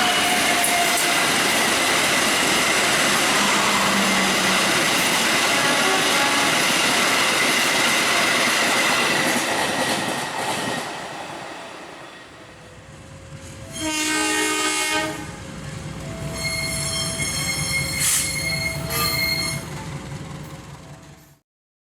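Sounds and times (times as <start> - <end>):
locomotive horn blast: 0.0 - 1.7, 3.0 - 7.2, 13.6 - 19.8
train passing: 0.0 - 21.4.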